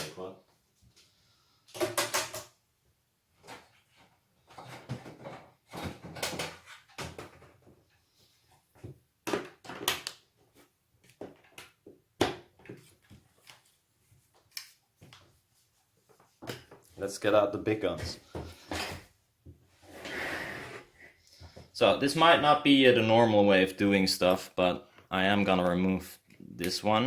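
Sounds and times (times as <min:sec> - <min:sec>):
tools knocking and clattering: 0:01.7 - 0:02.6.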